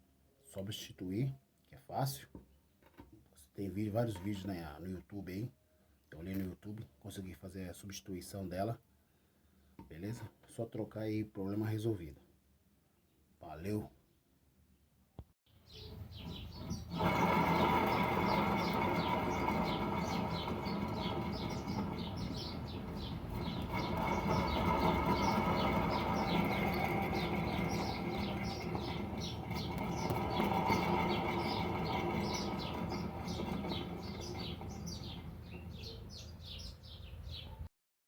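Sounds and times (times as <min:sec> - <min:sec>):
birds chirping: 0:15.5 - 0:37.7.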